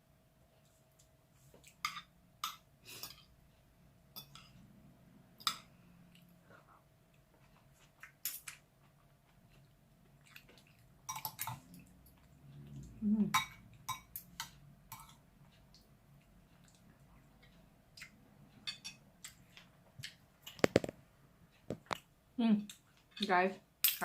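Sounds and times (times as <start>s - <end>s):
cutlery clinking on dishes: 1.8s - 3.3s, 11.1s - 11.8s, 18.6s - 19.0s.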